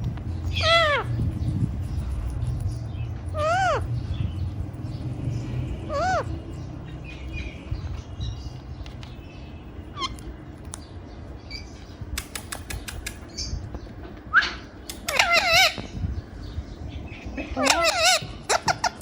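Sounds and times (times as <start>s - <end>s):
parrot chirping: 0.4s - 1.2s, 3.0s - 4.4s, 5.8s - 7.6s, 14.3s - 16.0s, 17.5s - 19.0s
parrot warbling call: 0.5s - 1.1s, 3.4s - 3.9s, 14.3s - 15.9s, 17.5s - 19.0s
sharp clicks: 12.1s - 13.4s, 14.8s - 15.2s.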